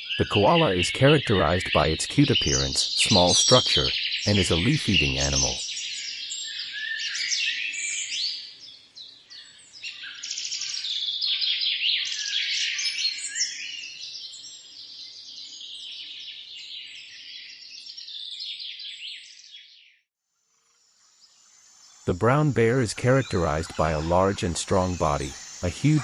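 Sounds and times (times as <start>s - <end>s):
chorus of birds chirping: 0.0s - 20.0s, 21.0s - 26.0s.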